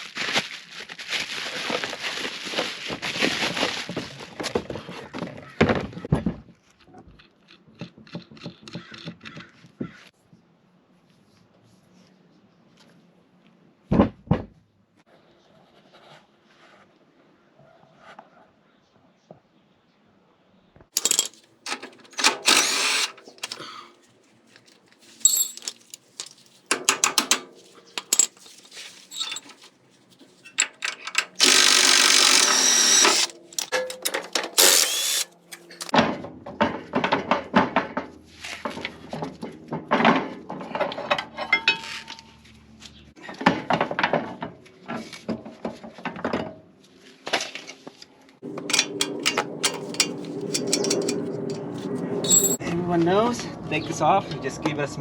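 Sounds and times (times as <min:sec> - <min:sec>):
power tool burst: 0:21.0 - 0:23.7, 0:30.5 - 0:35.9
metal tools clinking: 0:21.0 - 0:23.8, 0:25.0 - 0:35.9, 0:48.4 - 0:52.6.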